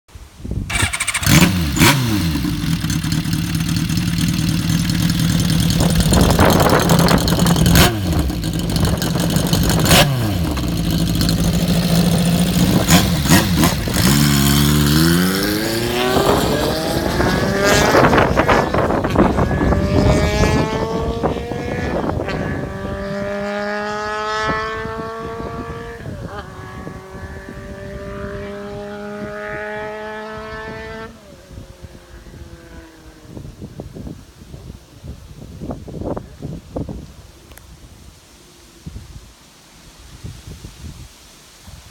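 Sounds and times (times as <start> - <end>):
motorcycle engine revving: 0.7 - 33.2.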